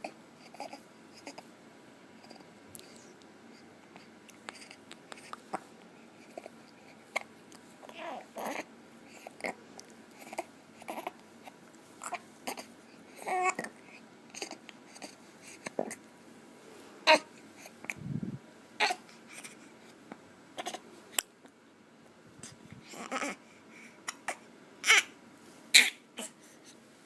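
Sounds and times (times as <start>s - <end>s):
baby babbling and cooing: 0.0s - 1.5s, 6.3s - 9.6s, 10.2s - 11.2s, 12.0s - 16.0s, 17.0s - 17.4s, 18.8s - 19.5s, 22.7s - 23.4s, 24.1s - 26.4s
baby hiccuping: 25.7s - 26.4s.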